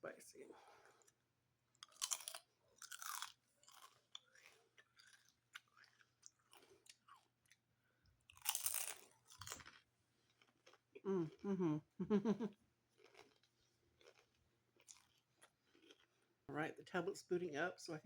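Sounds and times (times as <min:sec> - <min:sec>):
person crunching potato chips: 0:01.0 - 0:11.6, 0:12.9 - 0:16.2.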